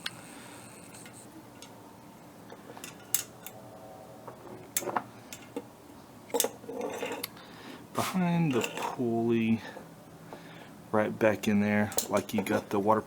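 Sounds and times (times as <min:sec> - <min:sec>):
light metallic clicks and clinks: 0:11.8 - 0:12.7.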